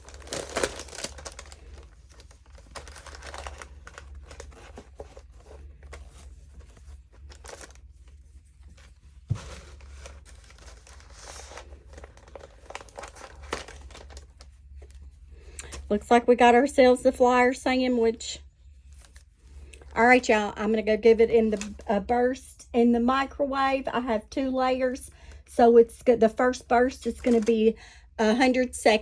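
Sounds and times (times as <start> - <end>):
rustling of fabric pads: 0.0 - 15.2
low steady hum: 0.0 - 29.0.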